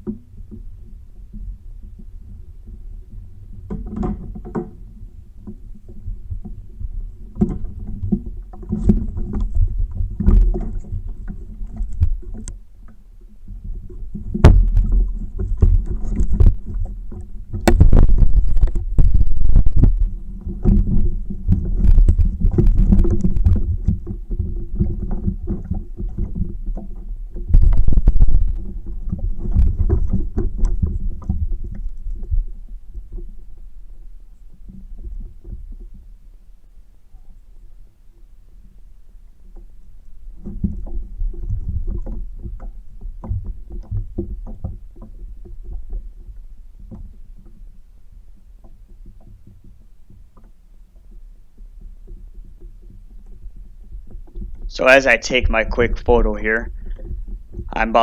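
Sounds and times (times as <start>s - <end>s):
knocks and rattles on kayak hull: 0.0s - 58.0s
low rumble: 17.6s - 23.8s.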